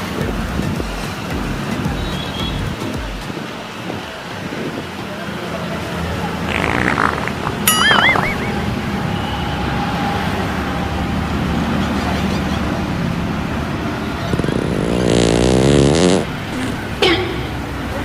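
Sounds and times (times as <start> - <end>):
motorbike engines running: 0.0 - 18.0
road traffic: 0.0 - 18.0
loud wavering sound: 6.5 - 9.0.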